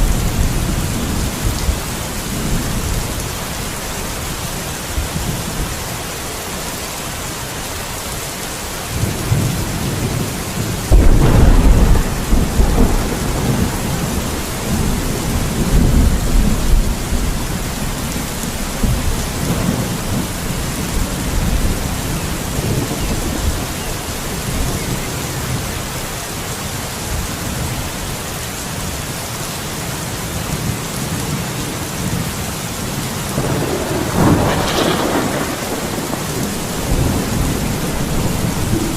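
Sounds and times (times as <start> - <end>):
thunder rumbling: 0.0 - 5.8, 8.9 - 25.9, 30.6 - 38.9
heavy rain: 0.0 - 38.9
loud thunder clap: 9.3 - 23.7, 33.4 - 38.9.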